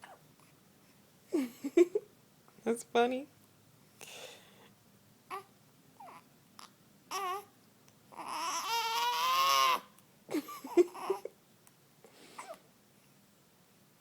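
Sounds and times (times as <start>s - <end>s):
newborn baby crying: 5.3s - 10.0s, 10.6s - 11.4s.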